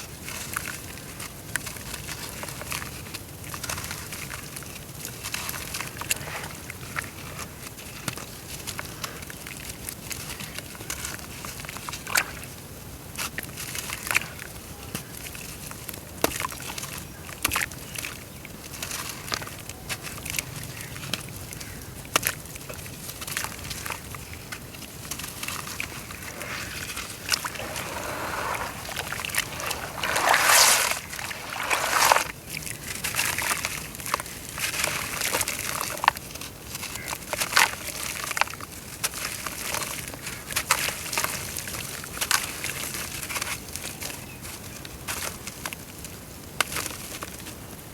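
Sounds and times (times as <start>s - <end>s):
dirt crumbling in water: 24.8s - 36.2s
water sloshing: 25.3s - 32.7s
water splashing: 25.4s - 32.7s.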